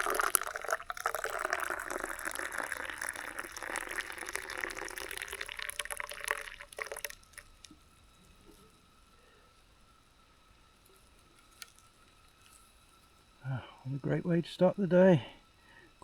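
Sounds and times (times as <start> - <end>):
water pouring: 0.0 - 7.7.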